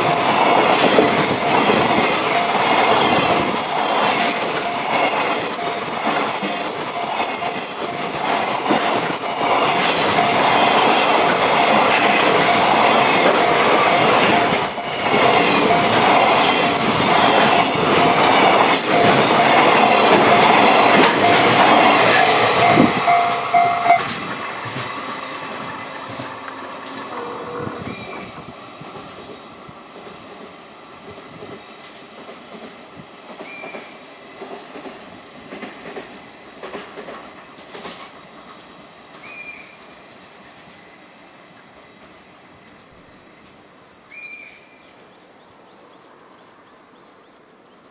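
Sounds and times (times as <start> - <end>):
crossing warning bell ringing: 0.0 - 24.3, 27.1 - 27.9
wheels clacking over rail joints: 0.0 - 27.9.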